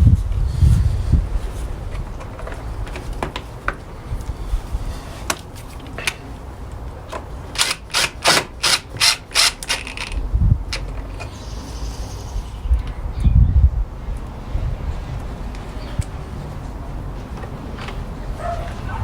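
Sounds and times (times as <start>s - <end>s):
ratchet tool clicking: 7.6s - 10.9s.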